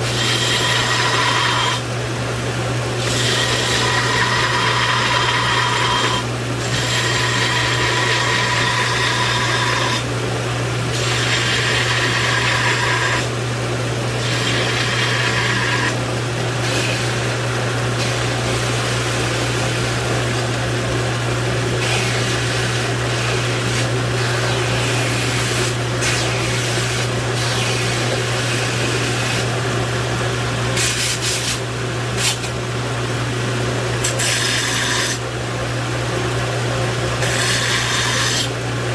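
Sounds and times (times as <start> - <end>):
power grinder motor hum: 3.0 - 10.1, 14.1 - 20.3.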